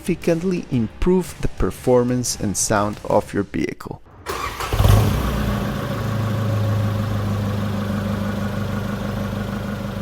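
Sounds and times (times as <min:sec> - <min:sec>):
car engine idling deeply: 0:05.0 - 0:10.0.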